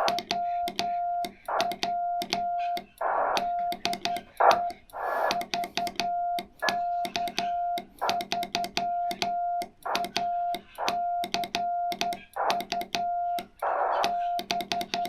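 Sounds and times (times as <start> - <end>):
morse code tone: 0.0 - 15.0
radio band hiss: 2.6 - 3.6, 4.2 - 5.4, 13.6 - 14.4.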